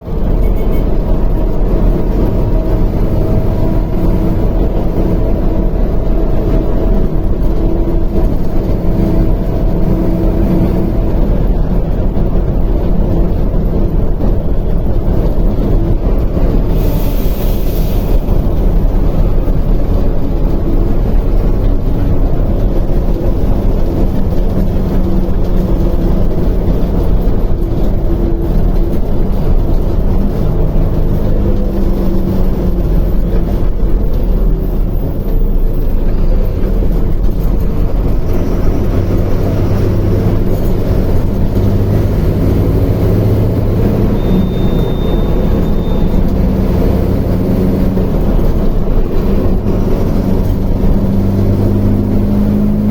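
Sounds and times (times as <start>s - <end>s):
bus engine running: 0.0s - 52.9s
high beep: 44.0s - 46.6s.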